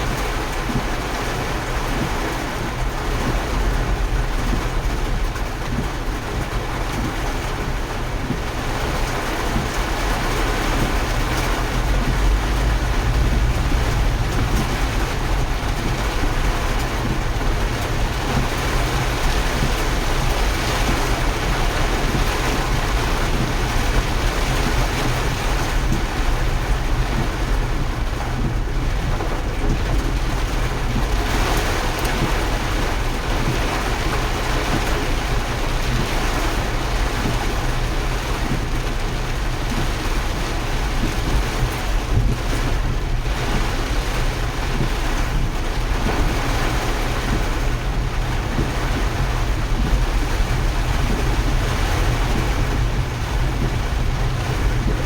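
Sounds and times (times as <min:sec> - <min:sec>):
floodwater rushing: 0:00.0 - 0:55.0
deep rumble: 0:01.7 - 0:33.9, 0:44.8 - 0:55.0.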